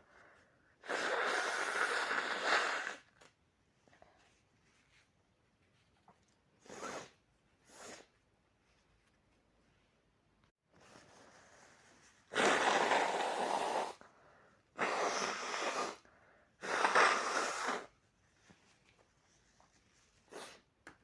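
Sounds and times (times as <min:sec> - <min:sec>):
person blowing nose: 0:00.8 - 0:03.2, 0:06.6 - 0:08.1, 0:12.3 - 0:14.0, 0:14.8 - 0:16.0, 0:16.6 - 0:18.0, 0:20.2 - 0:20.7.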